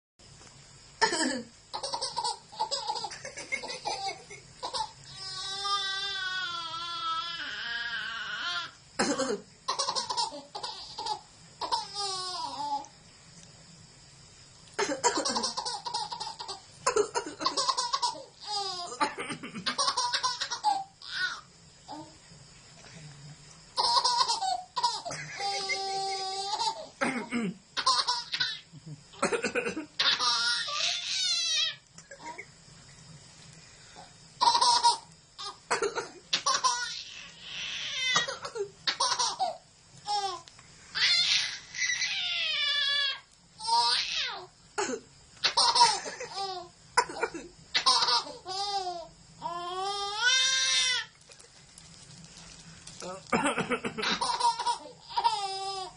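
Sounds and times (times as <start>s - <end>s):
baby laughing: 1.8s - 5.0s, 9.7s - 12.5s, 14.8s - 19.0s, 19.6s - 21.4s, 23.8s - 26.9s, 27.8s - 28.6s, 34.4s - 35.6s, 36.3s - 37.3s, 38.0s - 40.4s, 45.4s - 46.7s, 47.8s - 48.9s, 54.0s - 55.7s
man coughing: 27.0s - 27.6s, 53.3s - 54.0s.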